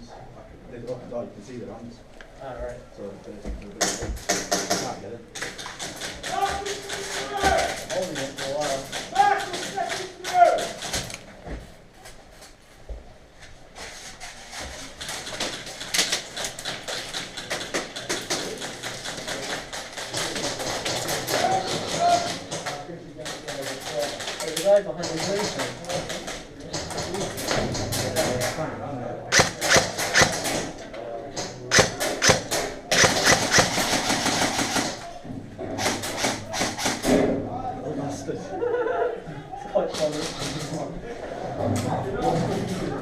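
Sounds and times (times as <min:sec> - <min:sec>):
airsoft guns firing: 0:29.3 - 0:30.8, 0:31.7 - 0:35.0.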